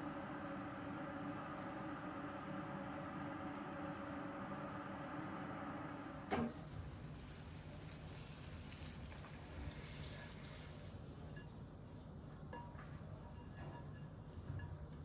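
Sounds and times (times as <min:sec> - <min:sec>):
water running in a kitchen: 0:05.9 - 0:12.5
short sharp clunk: 0:06.3 - 0:06.6.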